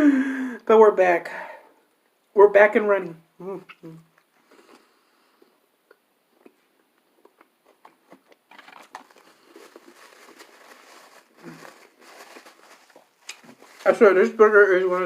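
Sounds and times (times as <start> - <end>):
eating a sandwich: 3.5 - 10.6
soft crackle: 3.6 - 14.1.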